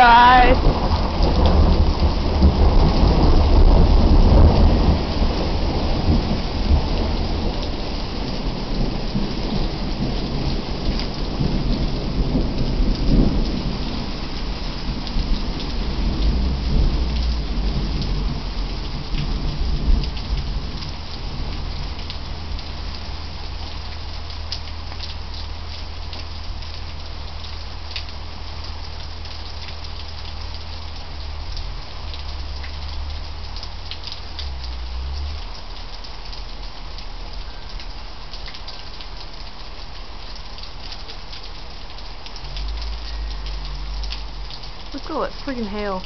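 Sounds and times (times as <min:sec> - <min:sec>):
heavy low rumble: 0:41.6 - 0:45.9.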